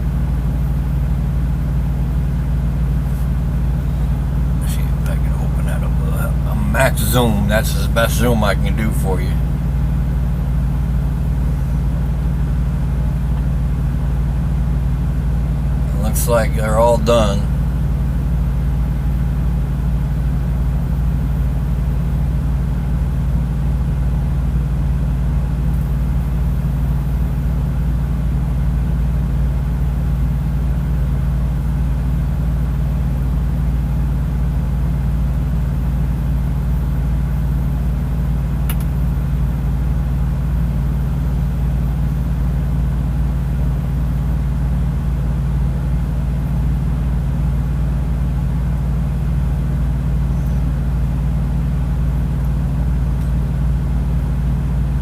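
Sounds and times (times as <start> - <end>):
diesel truck engine idling: 0.0 - 55.0
brief click: 38.7 - 38.9.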